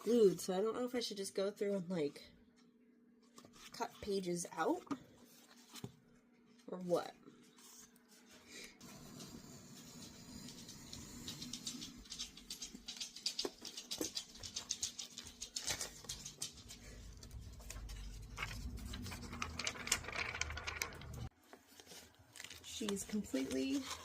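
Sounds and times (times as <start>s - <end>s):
paper pages rustling and crackling: 12.1s - 24.0s
low handling rumble: 16.7s - 21.3s.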